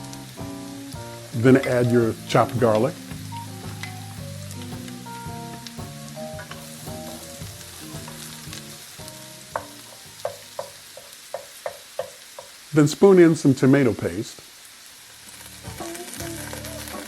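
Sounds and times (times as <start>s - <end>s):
soft background music: 0.0s - 11.0s, 15.4s - 17.0s
vegetables sizzling in a pan: 0.0s - 17.0s
stirring in a pan: 1.1s - 12.7s.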